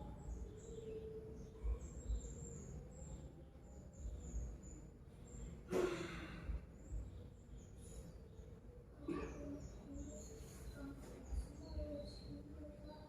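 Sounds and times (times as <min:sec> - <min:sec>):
faint high-pitched chirping: 0:00.0 - 0:13.0.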